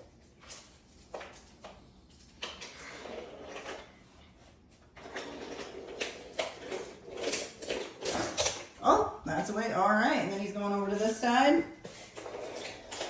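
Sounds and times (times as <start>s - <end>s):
toy train rolling on wooden track: 5.0s - 8.1s, 12.2s - 13.0s.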